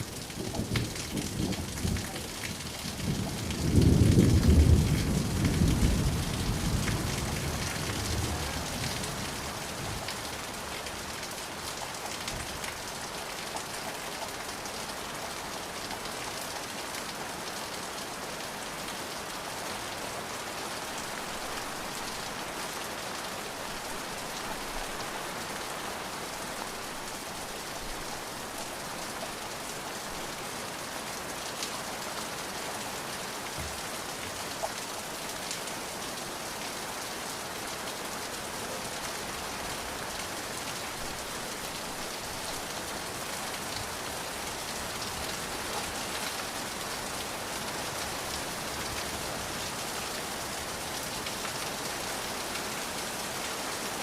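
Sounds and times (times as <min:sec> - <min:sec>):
rain falling: 0:00.0 - 0:54.0.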